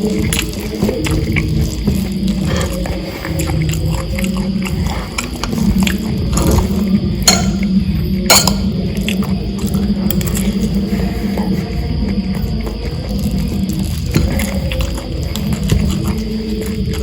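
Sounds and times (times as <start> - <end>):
chewing and mouth sounds: 0.0 - 17.0
utensil clinking on a plate: 7.2 - 8.8.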